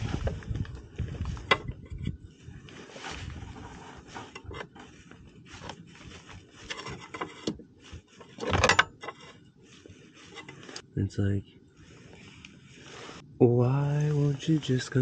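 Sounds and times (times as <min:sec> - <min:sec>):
hand tools scraping metal: 0:03.6 - 0:10.8.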